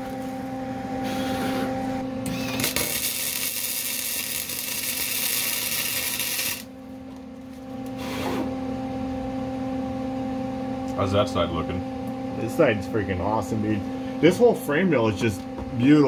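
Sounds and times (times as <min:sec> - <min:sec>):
welding arc crackling: 0:02.2 - 0:06.7.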